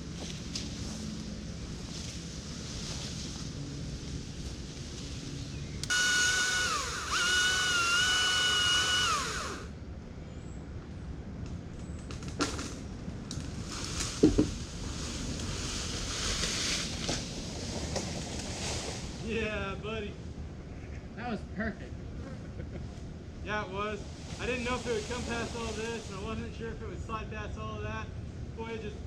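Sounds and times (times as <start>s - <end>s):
chainsaw cutting: 5.8s - 9.7s.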